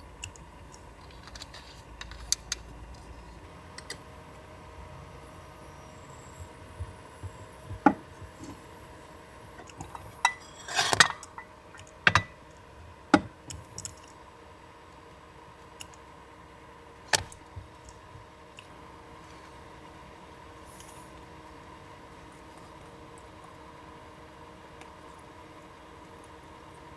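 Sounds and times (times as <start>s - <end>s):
faint steady hum: 0.0s - 26.9s
dishes and cutlery clinking: 9.6s - 12.4s.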